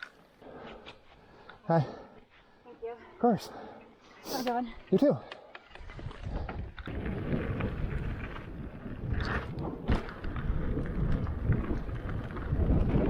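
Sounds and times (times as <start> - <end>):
bike tyres rumbling on dirt: 5.8 - 13.0
wind on microphone: 5.8 - 13.0.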